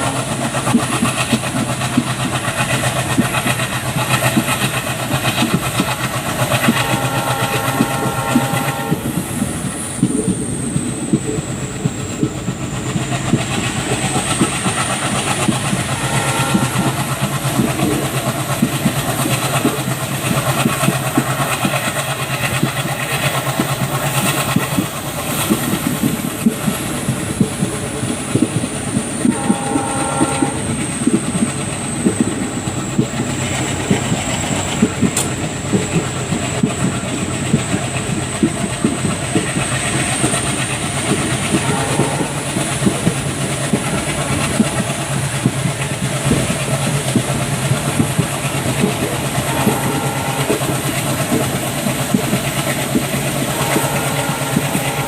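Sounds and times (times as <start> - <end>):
diesel engine chugging: 0.0 - 55.0
wheels clattering over rail joints: 0.0 - 55.0
locomotive horn: 6.6 - 9.2, 15.7 - 17.7, 29.2 - 31.2, 41.5 - 42.9, 49.4 - 51.5, 53.3 - 55.0.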